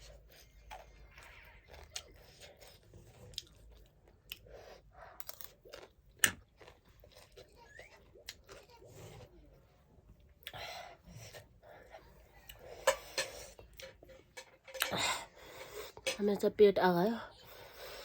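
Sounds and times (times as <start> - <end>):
person chewing crunchy food: 0.0 - 9.4.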